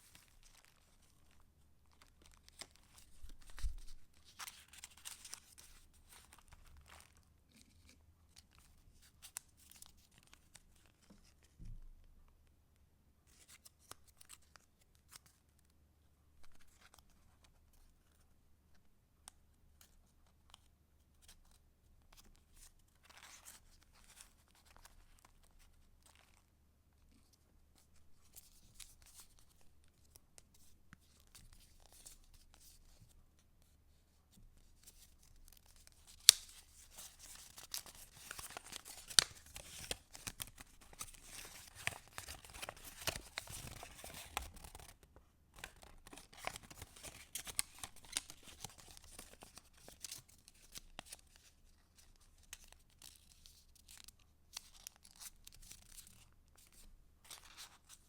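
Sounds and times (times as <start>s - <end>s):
paper rustling and crinkling: 0.0s - 11.6s, 34.6s - 58.0s.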